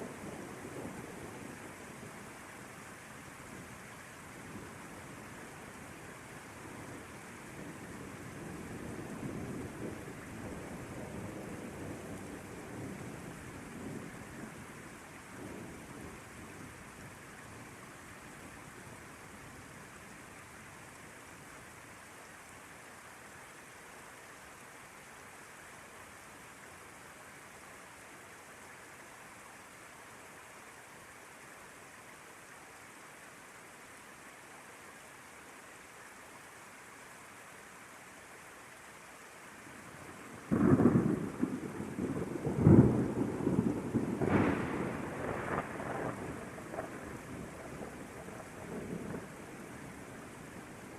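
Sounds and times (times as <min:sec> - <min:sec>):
low rumble of thunder: 0:00.0 - 0:02.7, 0:03.4 - 0:19.7, 0:39.8 - 0:50.9
steady rain falling: 0:00.0 - 0:50.9.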